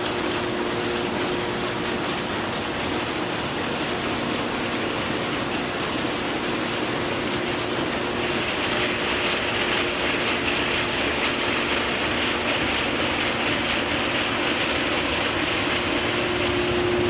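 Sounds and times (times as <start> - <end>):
machinery clattering: 0.0 - 7.8
machinery hum: 0.0 - 8.0.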